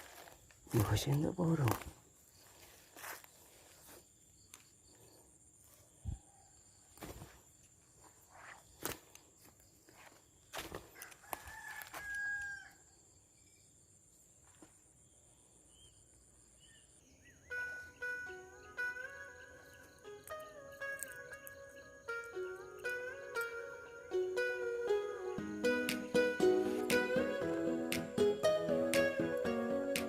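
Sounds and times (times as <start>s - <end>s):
rooster crowing: 11.0s - 12.9s
music: 17.5s - 30.0s.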